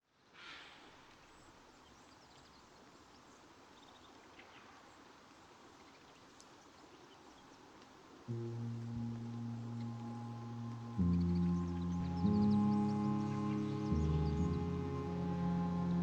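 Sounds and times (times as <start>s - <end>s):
low steady hiss: 0.0s - 16.0s
small ticks and chirps: 1.4s - 16.0s
soft rush of noise: 4.9s - 16.0s.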